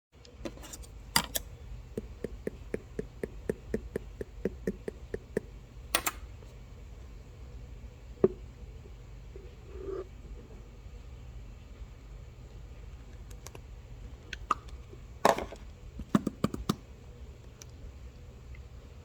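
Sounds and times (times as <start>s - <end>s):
low steady hum: 0.2s - 19.0s
sharp clicks: 6.0s - 6.2s.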